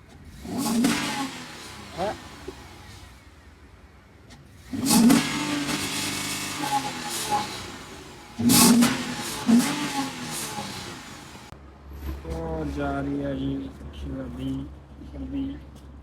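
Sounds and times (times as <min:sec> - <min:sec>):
jeep engine revving: 0:00.0 - 0:03.4, 0:04.5 - 0:11.6.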